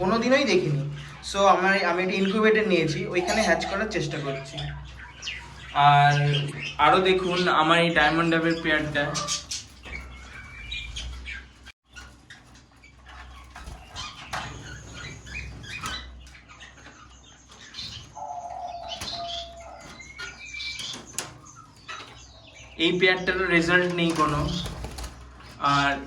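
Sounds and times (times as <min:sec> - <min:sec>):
birds chirping: 0:00.0 - 0:26.0
birds fluttering wings: 0:08.8 - 0:16.7, 0:23.4 - 0:25.9.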